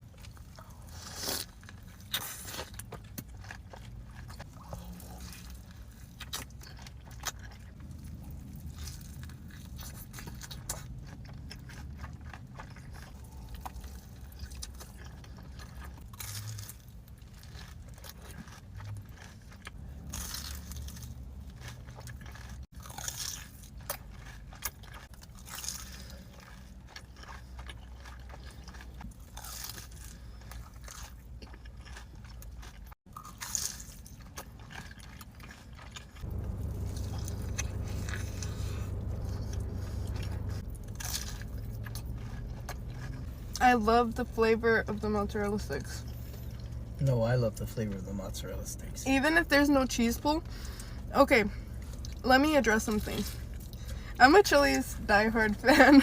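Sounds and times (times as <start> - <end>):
crunchy chewing of food: 0.0 - 49.0, 50.2 - 56.0.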